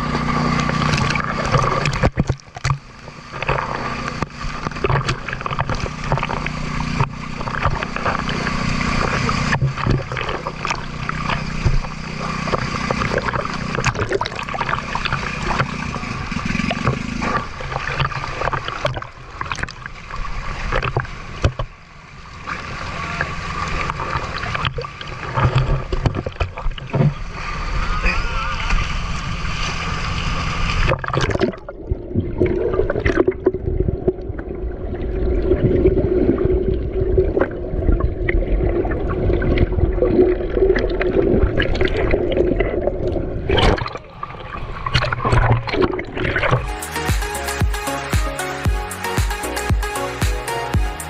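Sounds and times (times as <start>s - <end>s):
water sloshing and splashing: 0.0s - 27.8s, 28.6s - 46.7s
low hum: 0.0s - 51.0s.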